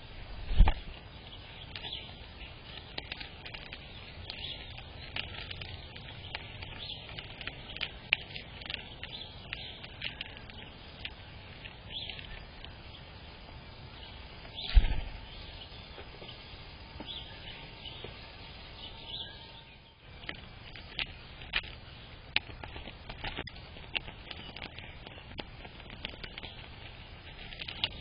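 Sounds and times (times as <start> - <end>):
small birds chirping: 0.0 - 28.0
steady background hiss: 0.0 - 28.0
loud low thump: 14.7 - 15.2.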